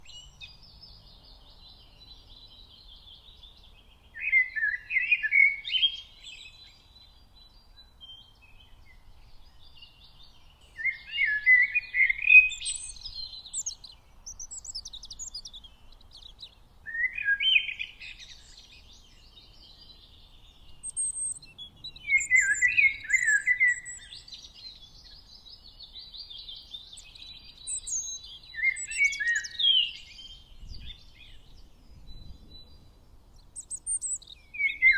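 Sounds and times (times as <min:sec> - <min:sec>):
bird warbling song: 0:00.0 - 0:34.9
high-pitched bird chirping: 0:12.2 - 0:16.4, 0:22.1 - 0:24.2, 0:27.0 - 0:30.0, 0:33.6 - 0:34.9.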